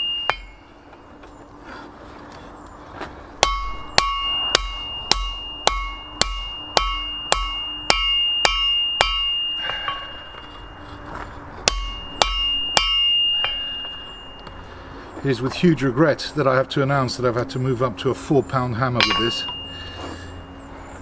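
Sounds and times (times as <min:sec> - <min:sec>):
hammer blows on anvil: 0:00.0 - 0:01.1, 0:03.4 - 0:15.0, 0:18.7 - 0:20.6
steady low hum: 0:00.0 - 0:21.0.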